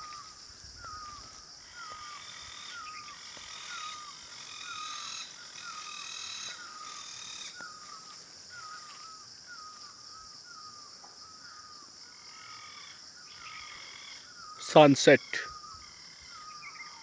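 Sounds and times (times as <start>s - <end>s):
high-pitched insect drone: 0.0s - 10.8s
bird repeating falling call: 14.6s - 15.4s.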